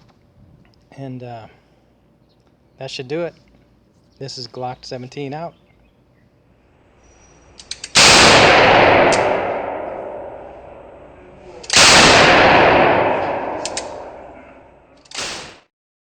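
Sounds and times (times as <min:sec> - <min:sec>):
sharp metallic clicks: 0:07.5 - 0:09.6, 0:11.6 - 0:14.3
gunshots with rolling echo: 0:07.9 - 0:15.5.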